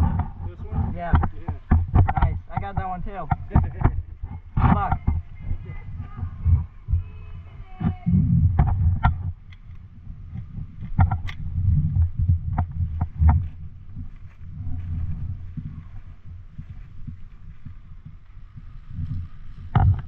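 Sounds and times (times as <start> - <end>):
sharp clicks and knocks: 0.0 - 5.2, 8.5 - 13.6
handling thumps and rumble: 0.0 - 20.0.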